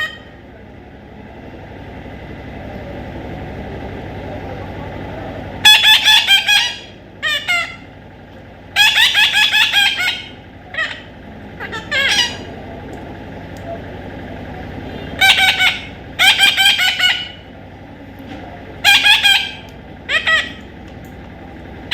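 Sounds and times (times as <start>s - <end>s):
parrot shrill rapid calls: 5.6s - 7.8s, 8.8s - 12.5s, 15.2s - 17.4s, 18.8s - 20.6s.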